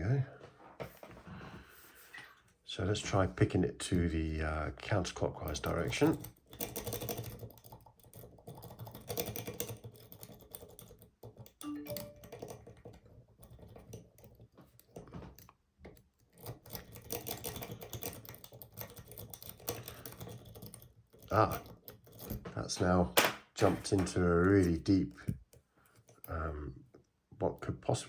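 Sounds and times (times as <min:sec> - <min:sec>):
lock pick clicks and scratches: 0:05.5 - 0:11.6, 0:12.8 - 0:22.4.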